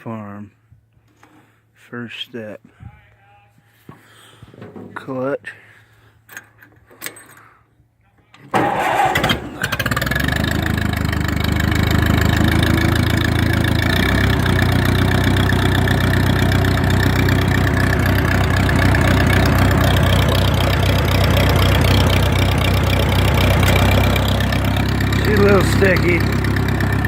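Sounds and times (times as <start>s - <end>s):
tractor engine starting and idling: 4.5s - 5.2s, 8.4s - 27.0s.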